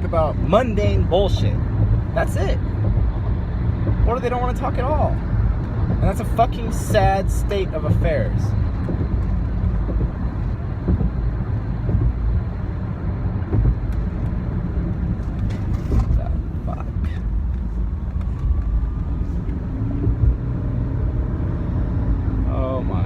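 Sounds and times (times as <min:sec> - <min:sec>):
car road and engine rumble: 0:00.0 - 0:23.0.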